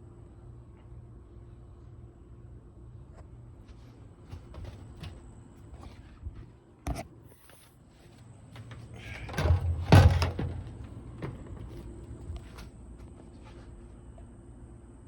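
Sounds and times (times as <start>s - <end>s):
heavy thump: 9.2s - 11.8s.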